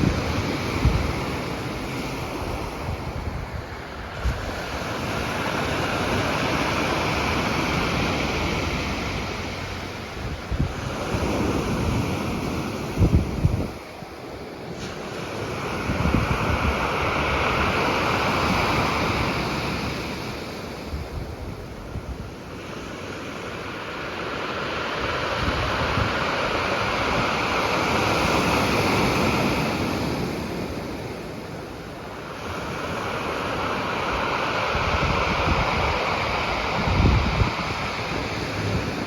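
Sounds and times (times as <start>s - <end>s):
wind buffeting the microphone: 0.0s - 39.0s.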